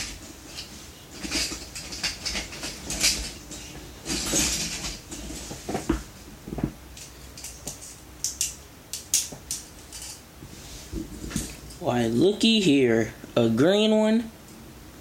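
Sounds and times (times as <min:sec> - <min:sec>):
plastic parts rustling and clicking: 0:00.0 - 0:10.2.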